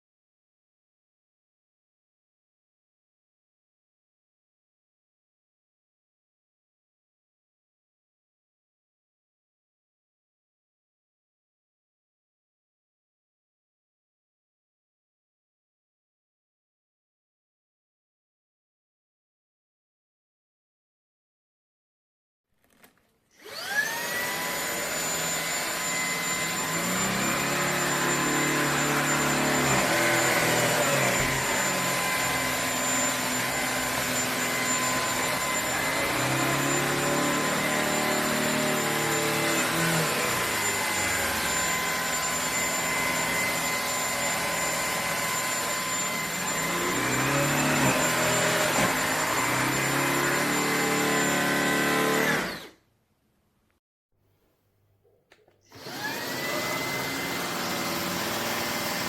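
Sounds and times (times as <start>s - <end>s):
vacuum cleaner motor whine: 23.4s - 52.8s, 55.7s - 59.0s.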